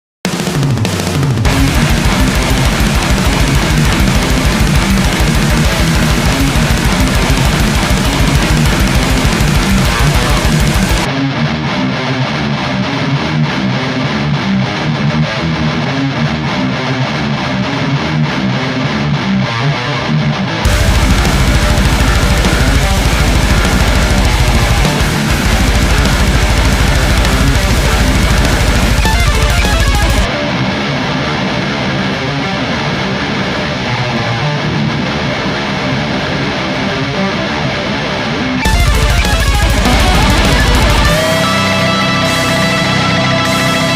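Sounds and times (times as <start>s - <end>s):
band backing track: 0.2s - 11.5s, 20.6s - 30.8s, 38.6s - 43.9s
electric guitar metal riff: 0.3s - 43.9s.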